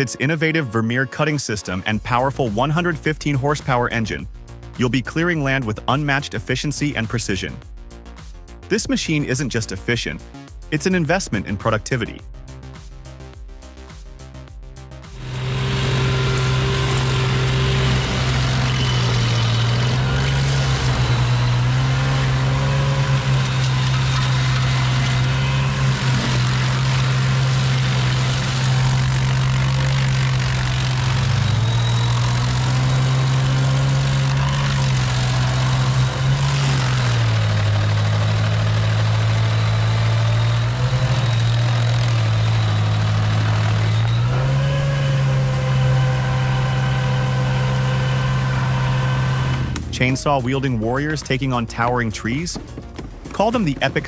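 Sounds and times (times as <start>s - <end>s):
stump cutter engine running: 15.1s - 54.0s.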